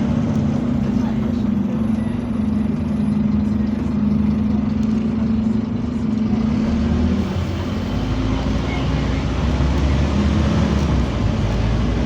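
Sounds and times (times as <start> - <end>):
bus engine humming: 0.0 - 12.0.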